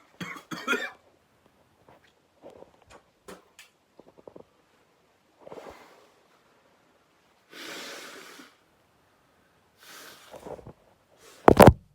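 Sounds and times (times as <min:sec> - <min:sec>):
person blowing breath: 0:07.5 - 0:08.6, 0:09.8 - 0:10.6.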